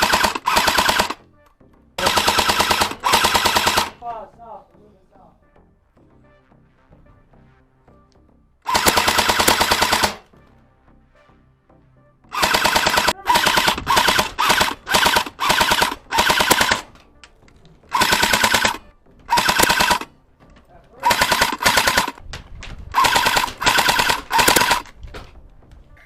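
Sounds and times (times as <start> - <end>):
airsoft gun firing bursts: 0.0 - 1.2, 2.0 - 4.1, 8.7 - 10.3, 12.3 - 16.9, 17.9 - 20.1, 21.0 - 22.3, 22.9 - 25.0.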